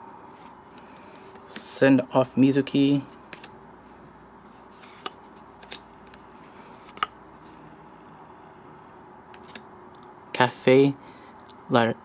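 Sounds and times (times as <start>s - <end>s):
cards flicking and clicking: 6.8s - 7.2s, 9.3s - 9.6s.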